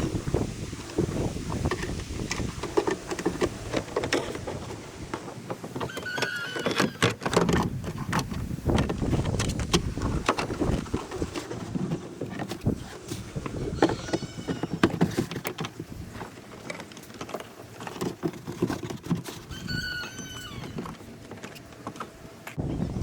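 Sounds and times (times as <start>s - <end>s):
wind rumbling on microphone: 0.0s - 5.2s, 7.3s - 16.4s, 19.2s - 21.2s, 22.6s - 23.0s.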